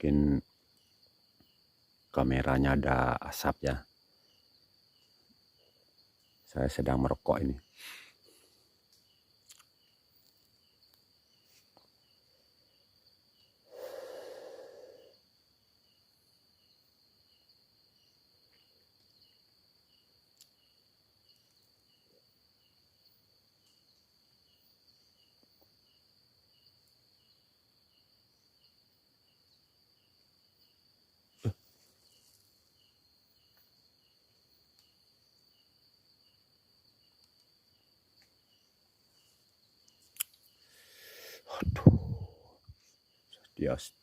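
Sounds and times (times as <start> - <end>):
cricket chirps: 0.0 - 44.0
insect drone: 0.0 - 44.0
person exhaling smoke: 13.6 - 15.2, 40.6 - 42.6.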